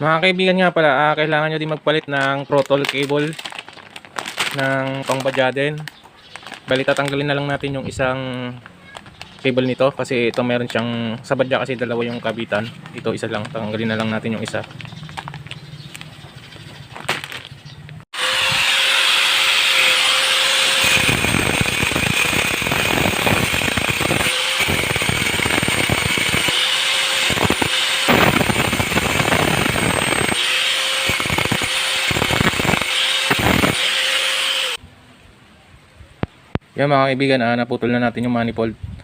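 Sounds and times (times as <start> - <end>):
angle grinder cutting metal: 18.1 - 34.8.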